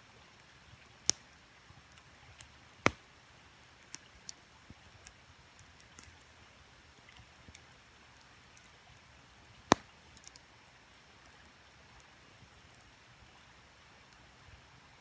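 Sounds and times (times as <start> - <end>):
creek water hiss: 0.0 - 15.0
campfire crackling: 0.4 - 14.4
sharp fire pop: 9.7 - 9.9.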